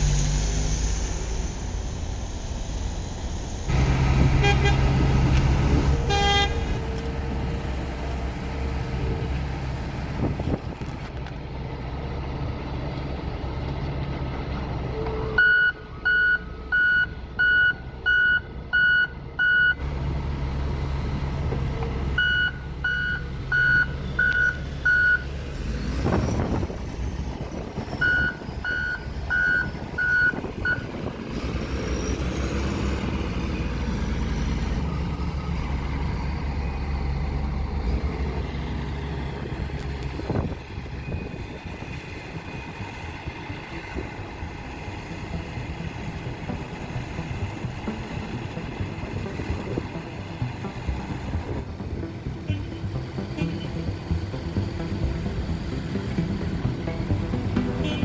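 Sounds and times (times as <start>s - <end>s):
diesel engine running: 0.0s - 58.0s
reversing alarm beeping: 15.3s - 19.8s, 22.2s - 25.3s, 28.0s - 30.9s.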